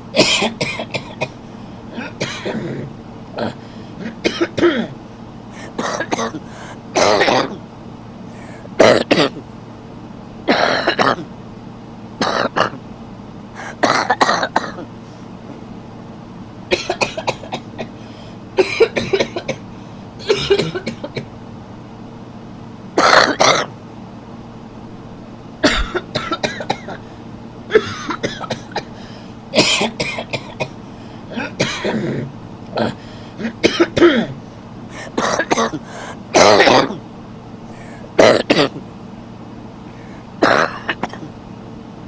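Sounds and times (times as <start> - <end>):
faint steady hum: 0.0 - 42.0
man coughing: 0.1 - 5.0, 5.6 - 7.6, 8.5 - 9.4, 10.5 - 11.3, 12.2 - 12.8, 13.6 - 14.9, 16.7 - 18.0, 18.6 - 19.6, 20.2 - 21.3, 23.0 - 23.7, 25.6 - 27.1, 27.7 - 34.4, 35.0 - 37.0, 37.8 - 38.8, 40.4 - 41.3
throat clearing: 0.2 - 5.0, 5.6 - 7.6, 8.4 - 9.4, 10.5 - 11.3, 12.2 - 12.8, 13.6 - 14.9, 18.6 - 19.6, 20.2 - 21.3, 23.0 - 23.7, 25.6 - 27.1, 27.7 - 34.4, 35.0 - 37.0, 37.8 - 38.8, 40.4 - 41.3.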